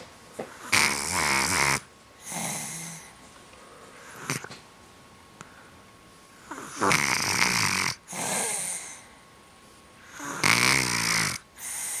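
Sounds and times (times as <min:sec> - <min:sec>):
person snoring: 0:00.6 - 0:03.2, 0:04.1 - 0:04.5, 0:06.4 - 0:09.0, 0:10.1 - 0:12.0.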